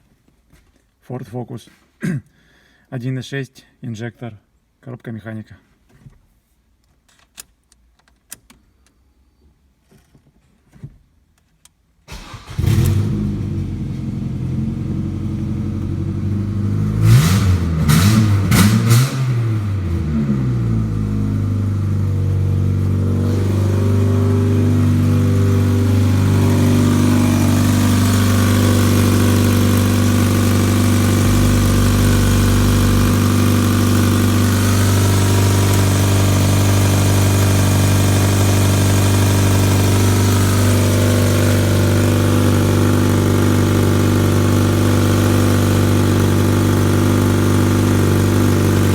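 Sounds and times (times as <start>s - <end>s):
car engine starting and revving: 12.1s - 48.9s.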